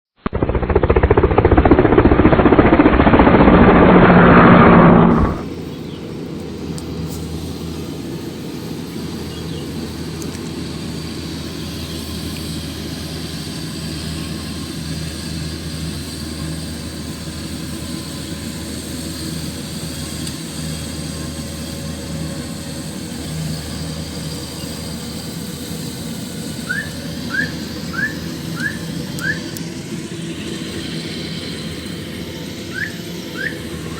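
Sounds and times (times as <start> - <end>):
loud muffled noise: 0.2 - 5.5
short rising chirps: 0.2 - 5.5
harvester engine droning: 0.2 - 33.9.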